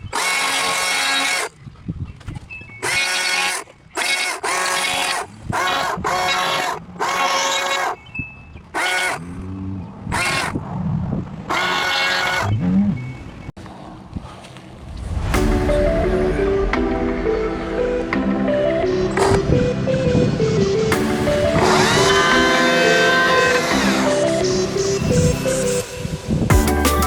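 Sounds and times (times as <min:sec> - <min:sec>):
chainsaw revving: 0:00.0 - 0:01.5, 0:02.8 - 0:08.0, 0:08.8 - 0:09.4, 0:10.1 - 0:10.6.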